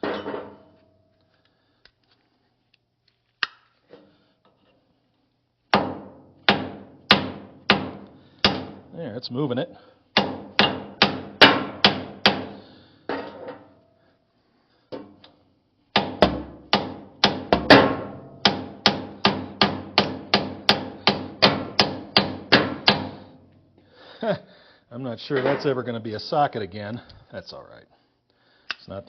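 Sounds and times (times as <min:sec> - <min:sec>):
hammer striking metal: 0:05.8 - 0:08.8, 0:10.2 - 0:13.4, 0:15.9 - 0:23.3.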